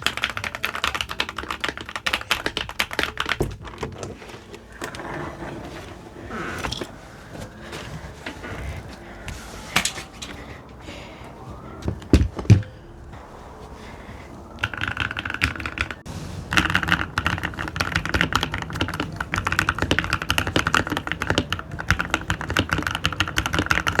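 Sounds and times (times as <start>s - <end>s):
keyboard typing: 0.0s - 4.2s, 14.4s - 24.0s
loud thuds: 11.5s - 14.6s.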